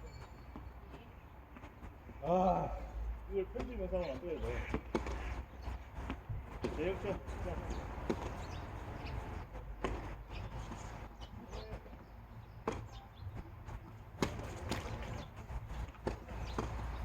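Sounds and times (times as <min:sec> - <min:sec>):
tennis ball bouncing: 0:03.6 - 0:10.9, 0:12.6 - 0:13.0, 0:14.1 - 0:17.0
tennis racket striking ball: 0:04.6 - 0:05.4, 0:06.0 - 0:09.2, 0:09.8 - 0:10.8, 0:14.1 - 0:15.2, 0:15.8 - 0:17.0.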